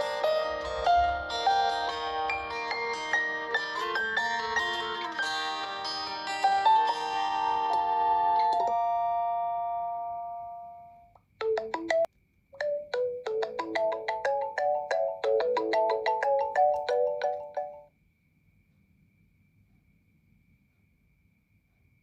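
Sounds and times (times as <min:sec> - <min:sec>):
quick melody of short notes: 0:11.4 - 0:17.9
ringtones playing: 0:11.4 - 0:17.9.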